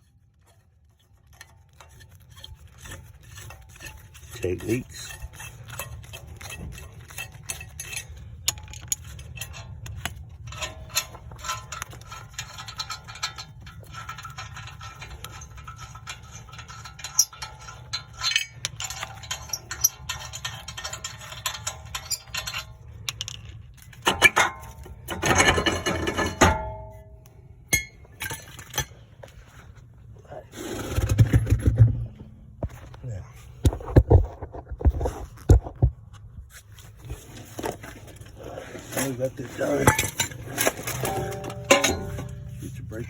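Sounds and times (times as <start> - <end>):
metal tools clinking on rotor: 1.2 - 29.1, 37.6 - 43.0
loud metallic clanks: 39.1 - 42.8.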